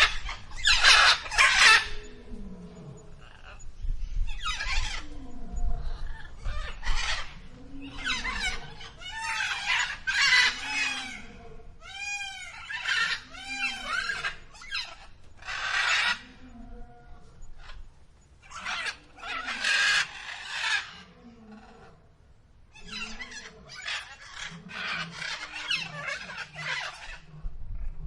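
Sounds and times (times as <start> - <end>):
fowl squawking and clucking: 0.0 - 2.1, 6.0 - 11.3, 18.5 - 21.2.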